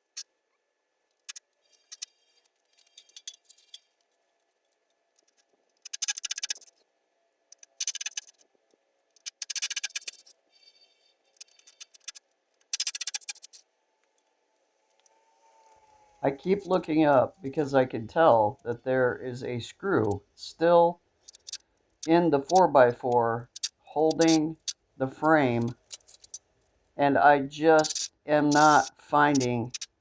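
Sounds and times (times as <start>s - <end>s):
ticks and scraping: 16.3s - 30.0s.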